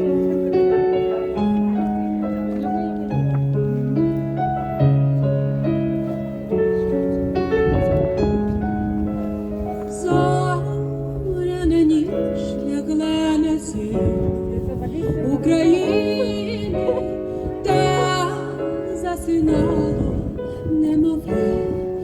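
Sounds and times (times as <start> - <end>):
piano chords: 0.0 - 22.0
woman singing: 9.9 - 22.0.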